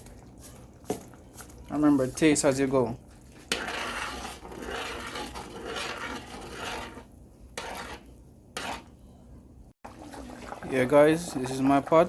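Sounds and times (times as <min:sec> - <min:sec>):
spoon stirring and scraping pot: 0:00.0 - 0:09.3.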